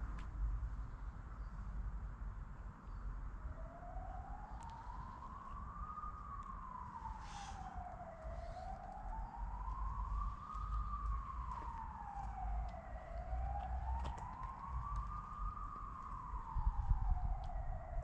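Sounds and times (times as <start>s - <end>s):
distant siren wailing: 3.2s - 18.0s
wind on microphone: 13.4s - 18.0s.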